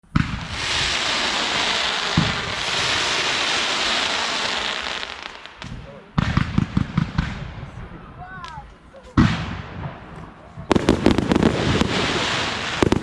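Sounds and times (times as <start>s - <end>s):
fireworks hissing crackle: 0.0s - 5.9s, 10.7s - 13.0s
fireworks shells booming: 0.0s - 7.9s, 9.2s - 13.0s.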